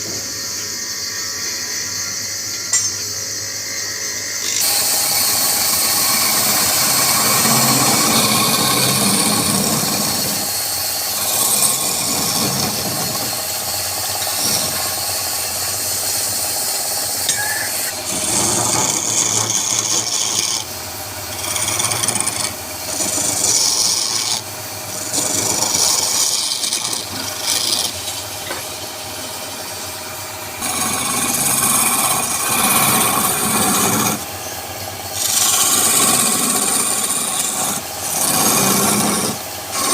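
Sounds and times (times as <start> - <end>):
tool scraping spinning wood: 3.6 - 39.9
woodturning lathe running: 3.7 - 39.9.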